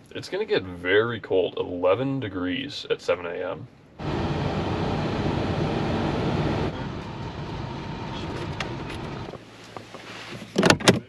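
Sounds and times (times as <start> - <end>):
vehicle driving noise: 4.0 - 10.4.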